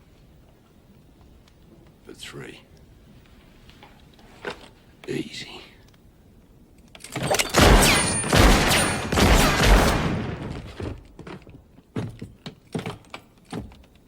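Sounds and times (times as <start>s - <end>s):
revolver gunshots: 7.4s - 10.8s.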